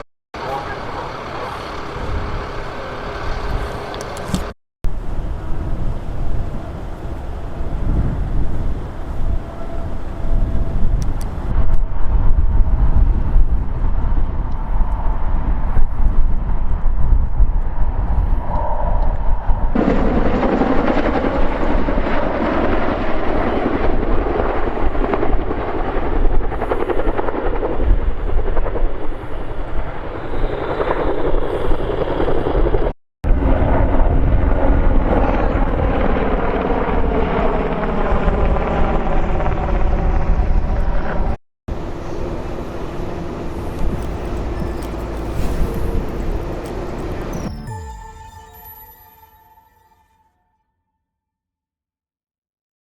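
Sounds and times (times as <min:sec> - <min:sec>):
aircraft flying over: 0:19.7 - 0:47.9.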